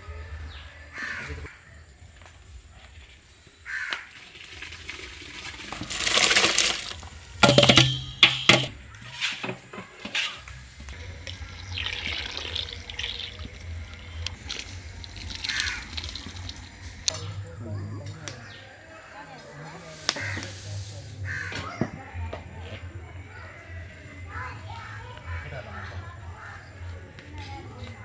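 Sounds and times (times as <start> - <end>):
water pouring and splashing: 4.1 - 8.7, 11.2 - 16.9
vessel knocking: 7.4 - 8.8.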